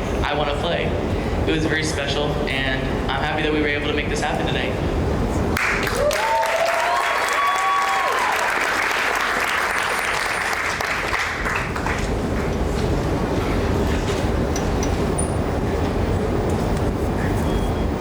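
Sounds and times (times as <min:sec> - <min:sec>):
audience applauding: 0:05.6 - 0:12.6.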